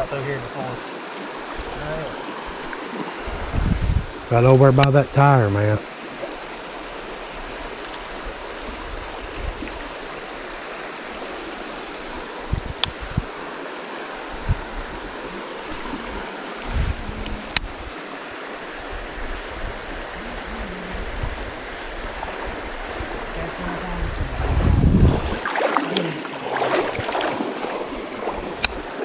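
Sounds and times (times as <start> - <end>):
river water rushing: 0.0 - 29.0
faint sharp clicks: 4.7 - 5.0, 7.8 - 8.0, 28.6 - 28.8.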